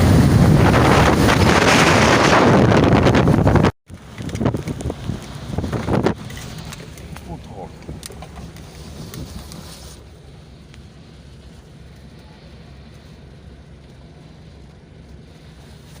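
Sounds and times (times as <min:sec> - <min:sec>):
wind buffeting microphone: 0:00.0 - 0:09.8.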